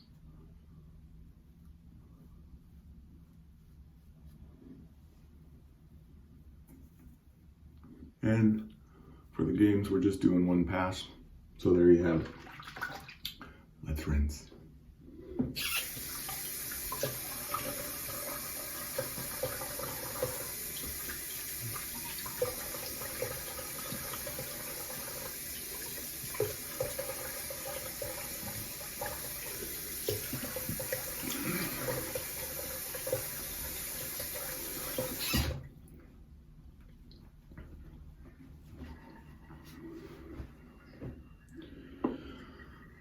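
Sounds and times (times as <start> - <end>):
water splashing: 12.2 - 13.3.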